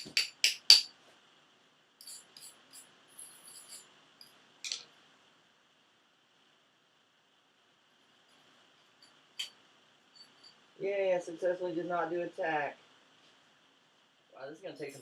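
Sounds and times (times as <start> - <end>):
scraping and tapping on steel: 2.0 - 4.9.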